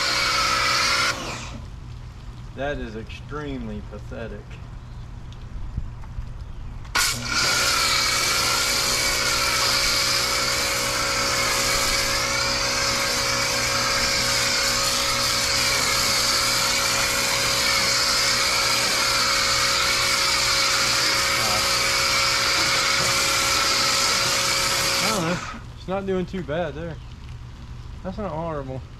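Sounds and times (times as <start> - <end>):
pressure washer motor whining: 0.0 - 1.7, 6.9 - 25.7
water spraying: 0.0 - 4.4, 6.9 - 28.8.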